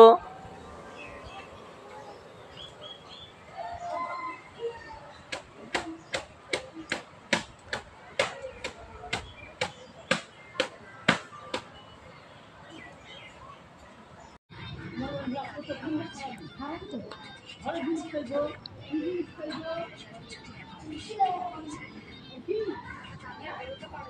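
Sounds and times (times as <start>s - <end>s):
faint chirp-like tones: 0.0s - 24.0s
sharp taps: 5.3s - 11.7s.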